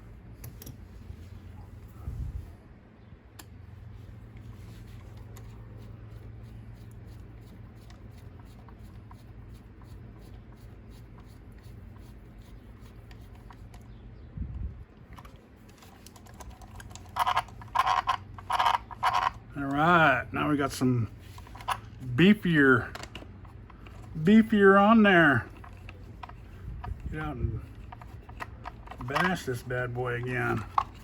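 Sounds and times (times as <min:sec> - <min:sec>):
steady low hum: 0:00.0 - 0:31.0
small tools clicking and scratching: 0:04.8 - 0:14.0, 0:15.2 - 0:19.8, 0:21.3 - 0:22.0, 0:22.8 - 0:24.4, 0:25.3 - 0:31.0.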